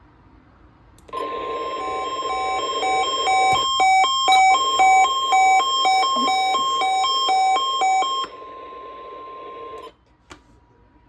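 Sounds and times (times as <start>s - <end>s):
steady warning tone: 1.1s - 9.9s.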